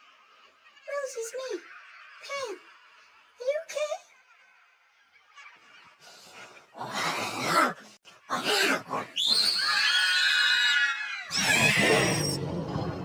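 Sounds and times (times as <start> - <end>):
harsh raspy vocal noise: 6.1 - 9.4
person squealing: 8.4 - 12.4.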